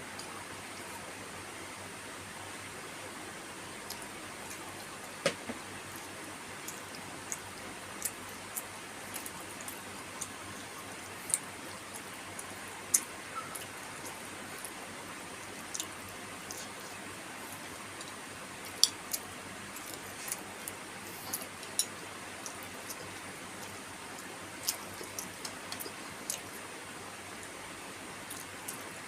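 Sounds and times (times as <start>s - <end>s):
chewing and lip smacks: 5.9s - 14.8s, 15.6s - 26.6s.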